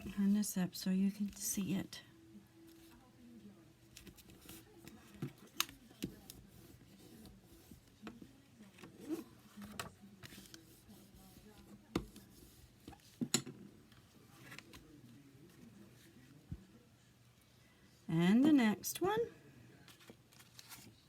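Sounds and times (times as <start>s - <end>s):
paper rustling: 19.9s - 21.0s.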